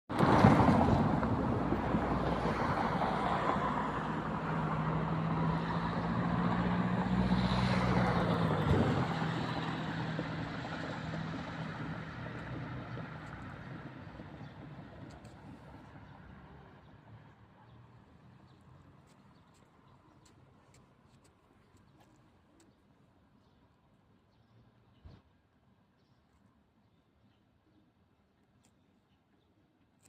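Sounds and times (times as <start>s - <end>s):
vehicle driving past: 0.2s - 15.0s.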